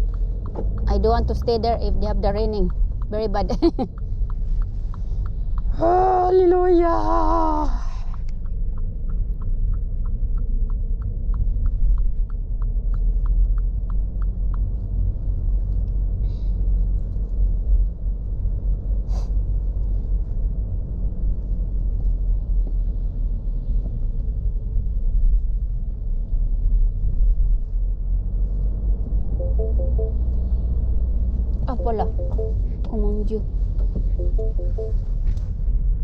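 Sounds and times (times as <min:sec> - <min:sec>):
turn signal ticking: 0:00.0 - 0:18.7, 0:28.5 - 0:35.5
car interior rumble: 0:00.0 - 0:36.0.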